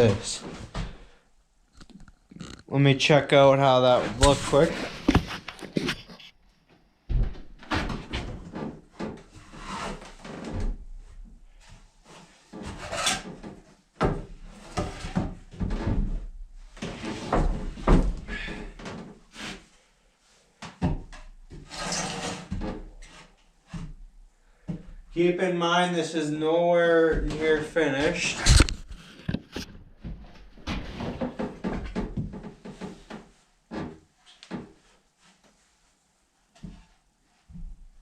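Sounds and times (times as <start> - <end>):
wood knocking and scraping: 4.0 - 6.3, 27.1 - 34.8.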